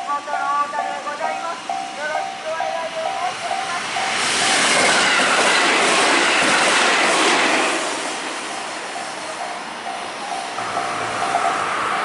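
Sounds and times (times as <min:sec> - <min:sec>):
level crossing warning bell: 0:00.0 - 0:04.6, 0:08.4 - 0:12.0
train passing at speed: 0:00.0 - 0:12.0.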